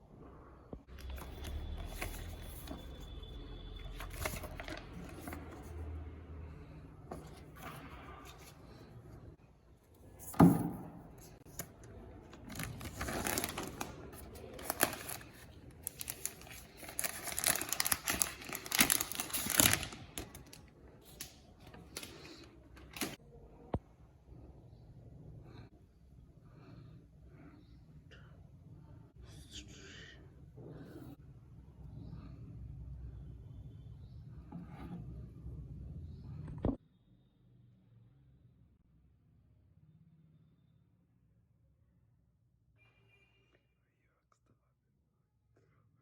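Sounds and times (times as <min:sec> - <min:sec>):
packaging rustling: 0:11.5 - 0:23.2
wrapping crinkling and tearing: 0:12.3 - 0:20.7.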